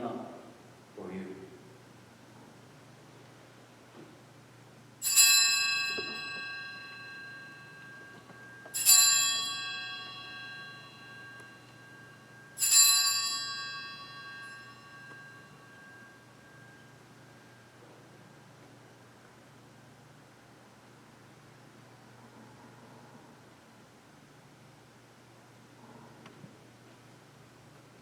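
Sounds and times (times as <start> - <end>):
altar bell ringing: 5.0 - 18.3.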